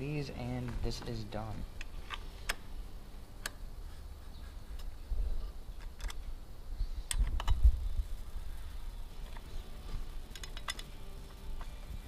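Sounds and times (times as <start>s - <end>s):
sharp metal clicks: 1.7s - 2.7s, 3.4s - 3.6s, 5.8s - 6.3s, 7.0s - 7.8s, 10.2s - 11.7s.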